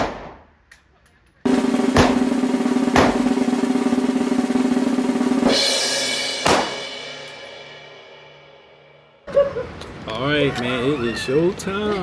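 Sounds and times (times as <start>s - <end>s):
sharp drum hits: 1.5s - 9.0s
held music chord: 1.5s - 9.2s.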